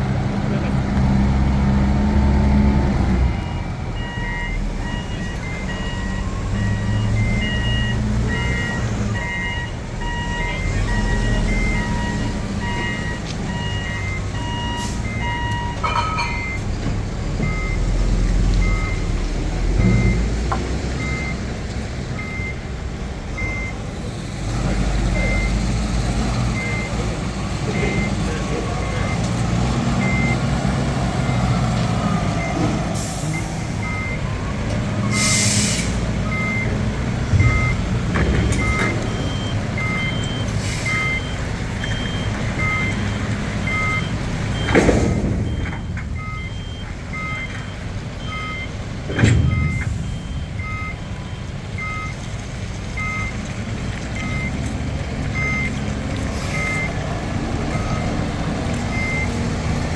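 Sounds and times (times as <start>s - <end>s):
diesel engine running: 0.0s - 59.9s
warning alarm beeping: 3.4s - 16.7s, 25.0s - 52.2s
short hisses: 35.1s - 36.0s.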